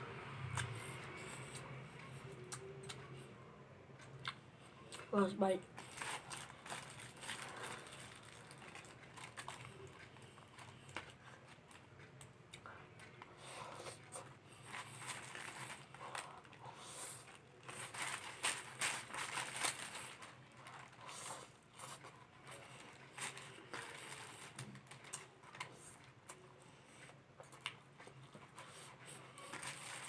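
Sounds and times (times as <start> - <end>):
chewing and mouth noises: 4.0 - 5.1.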